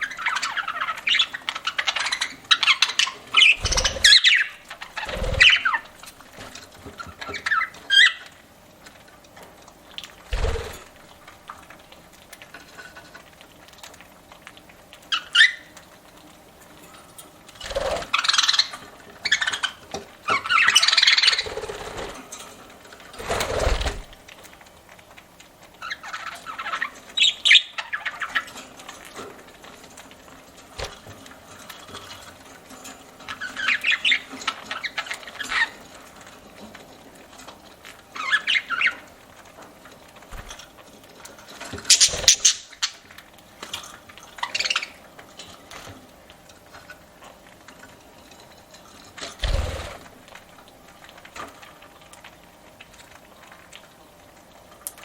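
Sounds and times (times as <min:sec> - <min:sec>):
budgerigars chirping: 0:00.0 - 0:05.9, 0:17.7 - 0:21.6, 0:25.9 - 0:28.4, 0:41.9 - 0:43.0, 0:44.4 - 0:45.0.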